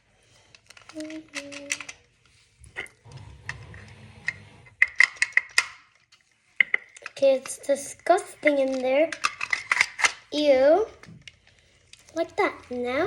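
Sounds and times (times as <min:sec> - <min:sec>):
plastic toy parts clicking: 0:00.5 - 0:02.1, 0:04.8 - 0:12.8.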